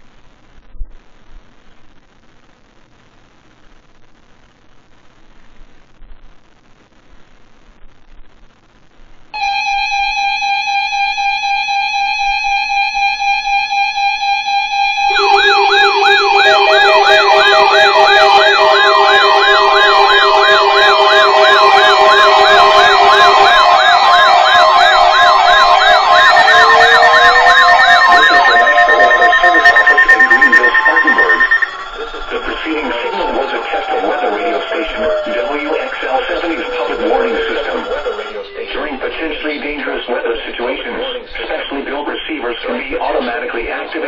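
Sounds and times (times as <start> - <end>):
fast-wavering siren wails: 9.4 - 38.5
slow rising siren wail: 9.4 - 38.6
steady electronic alarm tone: 9.4 - 39.3.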